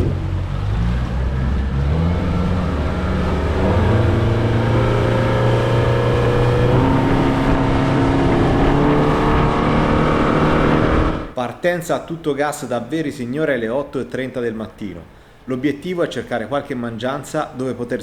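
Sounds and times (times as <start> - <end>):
motorboat engine at full throttle: 0.0 - 11.3.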